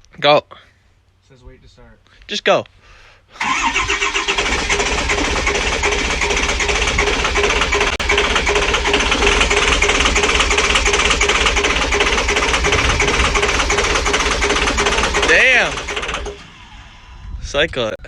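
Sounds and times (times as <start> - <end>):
starter motor whine: 3.4 - 17.4
diesel engine cranking: 3.4 - 17.8.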